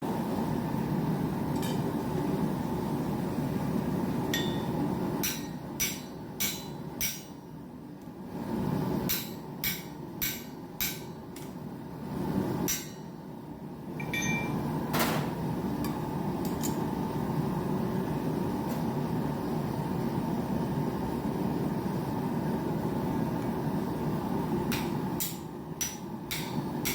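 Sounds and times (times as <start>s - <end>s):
hammer striking steel on anvil: 4.3s - 7.4s, 9.1s - 11.5s, 12.6s - 13.1s, 14.0s - 14.6s, 24.7s - 26.9s.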